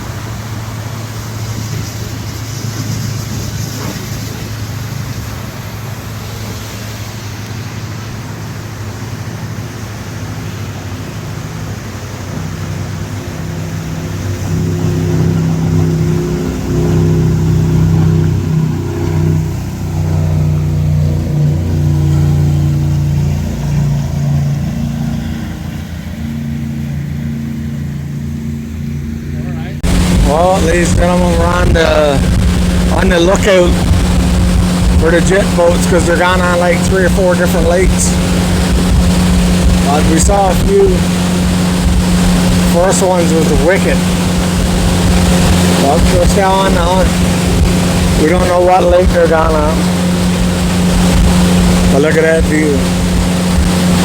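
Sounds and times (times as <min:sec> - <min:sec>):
wind noise: 0:00.0 - 0:09.6, 0:29.8 - 0:54.0
motorboat engine running: 0:00.0 - 0:54.0
water rushing: 0:00.0 - 0:54.0.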